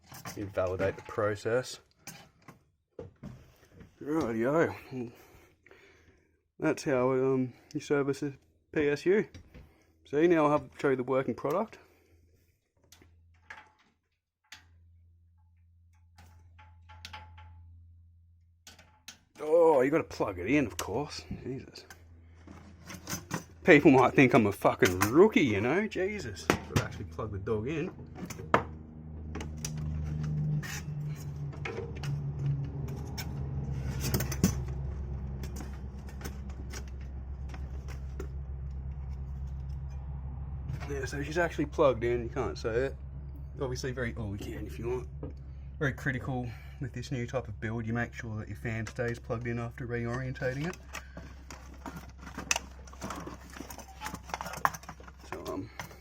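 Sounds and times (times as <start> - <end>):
handling clicks and knocks: 16.1 - 17.7, 26.2 - 40.1, 48.6 - 56.0
low steady hum: 19.4 - 56.0.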